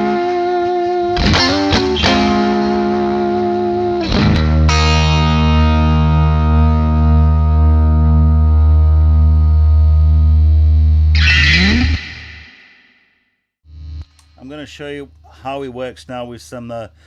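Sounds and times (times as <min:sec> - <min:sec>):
electric guitar chords: 0:00.0 - 0:12.9.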